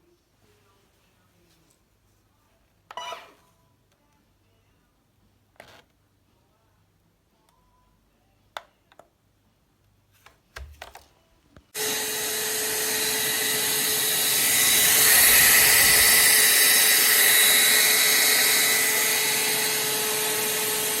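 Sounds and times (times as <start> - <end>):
handheld vacuum cleaner running: 11.8 - 21.0.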